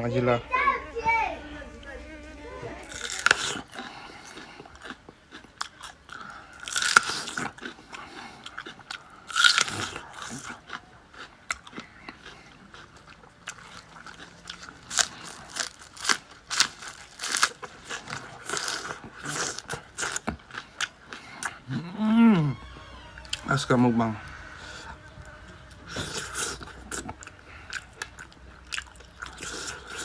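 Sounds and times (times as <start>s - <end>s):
crisp food crunching: 2.8s - 21.7s, 24.4s - 30.0s.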